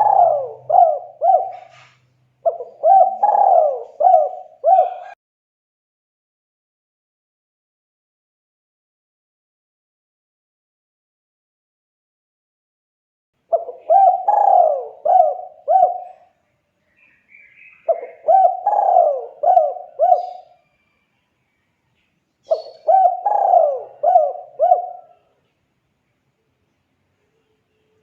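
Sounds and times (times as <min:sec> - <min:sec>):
dove cooing: 0:00.0 - 0:05.2, 0:13.5 - 0:16.4, 0:17.8 - 0:20.8, 0:22.4 - 0:25.4.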